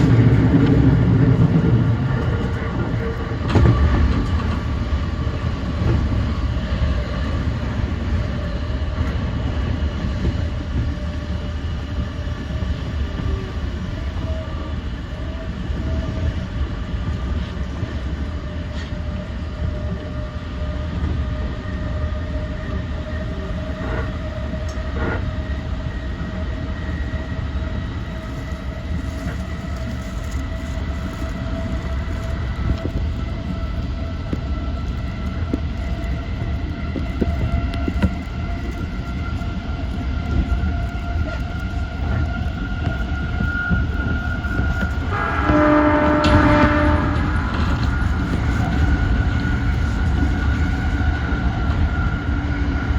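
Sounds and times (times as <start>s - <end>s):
train wheels rumbling on rails: 0.0s - 52.9s
train motor whine: 42.8s - 52.4s.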